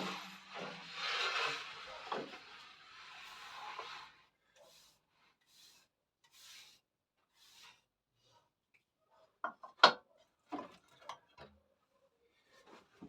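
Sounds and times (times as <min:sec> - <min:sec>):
wood scraping: 0:00.0 - 0:04.9.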